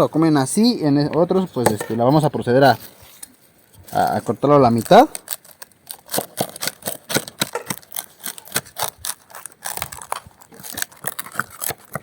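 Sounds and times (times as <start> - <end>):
tortilla crunching and cracking: 4.8 - 12.0.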